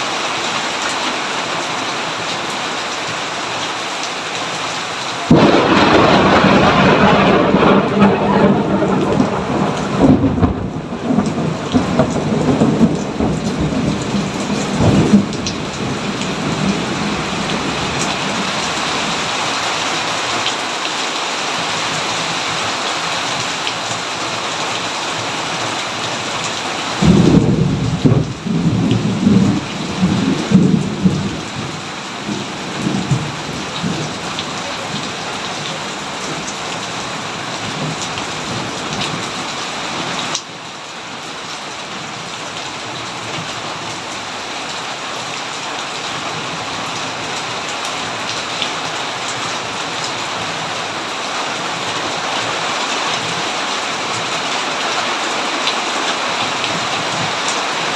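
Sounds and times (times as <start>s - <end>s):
steady rain: 0.0s - 57.9s
rolling thunder: 5.3s - 18.6s, 27.0s - 36.5s.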